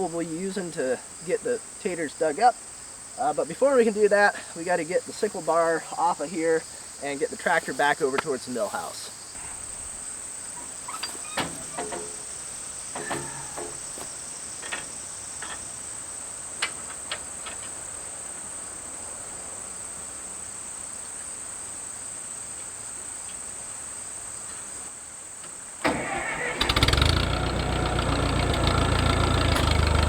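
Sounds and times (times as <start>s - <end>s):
clinks and knocks: 10.6s - 12.4s, 13.0s - 15.6s.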